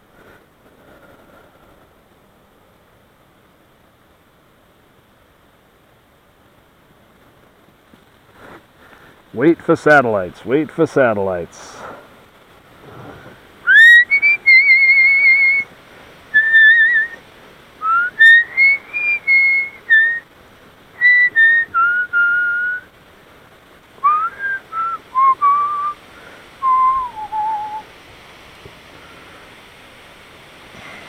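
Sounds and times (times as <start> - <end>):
person whistling a tune: 13.7 - 15.6, 16.4 - 17.2, 17.8 - 20.2, 21.0 - 22.8, 24.0 - 26.0, 26.6 - 27.8.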